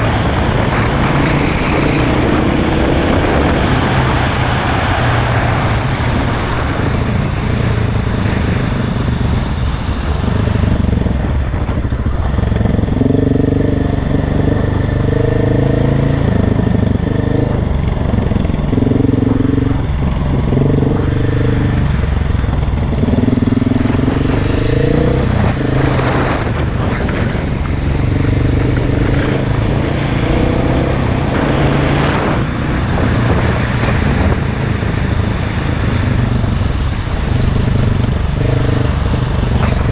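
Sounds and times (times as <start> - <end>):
dirt bike engine revving: 10.3 - 27.2.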